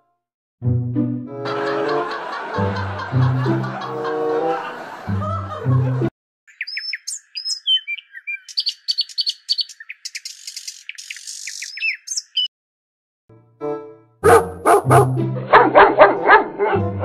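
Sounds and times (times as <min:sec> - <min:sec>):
small bird chirping: 0:06.5 - 0:12.5.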